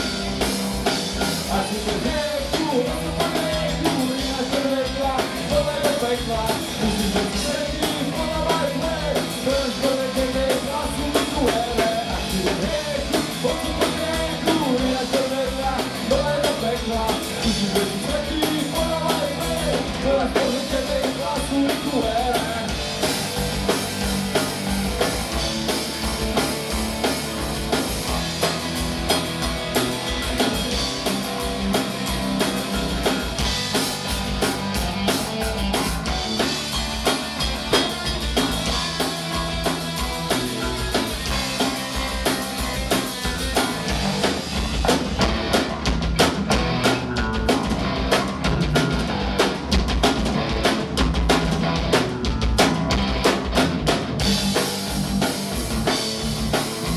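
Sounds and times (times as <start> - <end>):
punk rock band playing: 0.0 - 56.9
person singing: 1.4 - 22.8.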